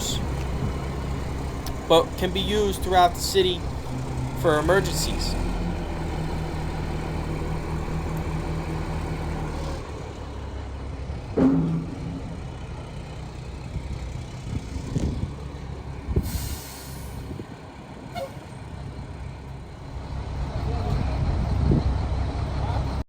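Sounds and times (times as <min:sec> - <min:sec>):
diesel truck engine idling: 0:00.0 - 0:23.0
loud knock: 0:11.4 - 0:12.6
hiss of released air: 0:16.2 - 0:17.3.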